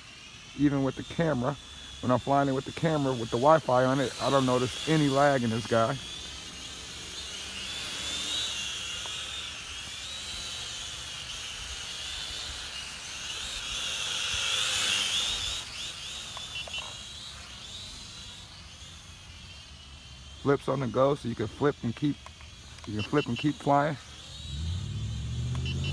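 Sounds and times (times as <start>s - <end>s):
drone propellers whining: 0.0s - 25.9s.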